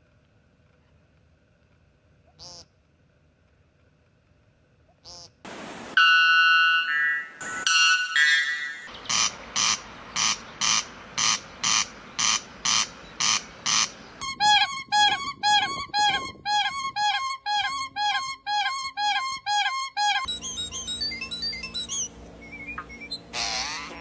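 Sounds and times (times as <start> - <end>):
clear piping bird notes: 6.0 - 23.3
harsh rasping bird call: 8.9 - 20.8.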